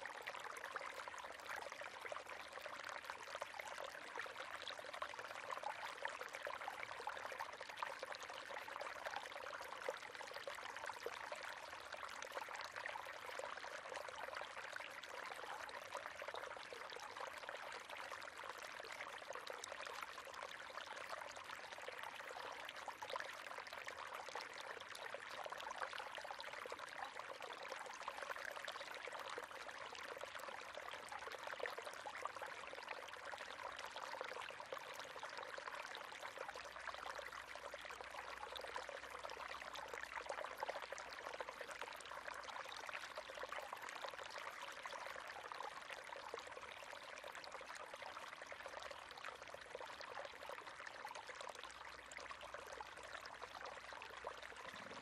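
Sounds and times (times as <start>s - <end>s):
river water flowing: 54.5s - 55.0s.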